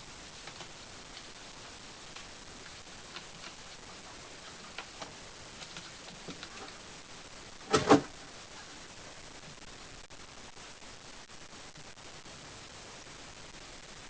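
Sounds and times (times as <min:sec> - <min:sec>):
paws tapping on a pole: 0:02.1 - 0:06.8.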